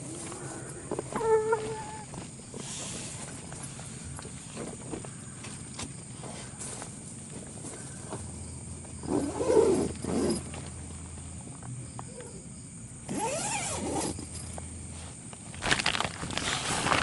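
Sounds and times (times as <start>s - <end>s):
animal calls: 0.4s - 2.1s.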